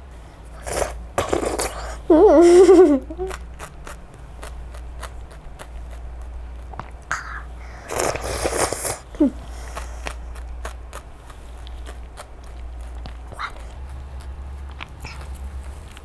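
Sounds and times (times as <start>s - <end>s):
steady low hum: 0.0s - 16.0s
chewing clicks and smacks: 3.2s - 8.9s, 9.5s - 16.0s.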